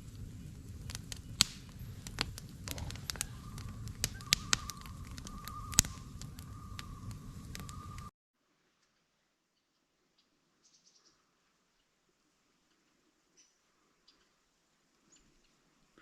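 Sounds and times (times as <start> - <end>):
campfire crackling and popping: 0.0 - 8.1
thin wavering whistle: 3.2 - 8.1.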